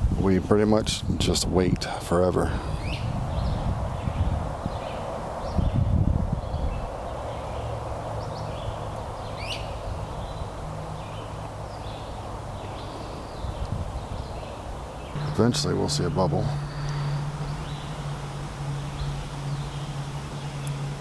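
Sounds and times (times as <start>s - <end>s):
birds chirping: 1.4s - 21.0s
low hum and rumble: 15.1s - 21.0s.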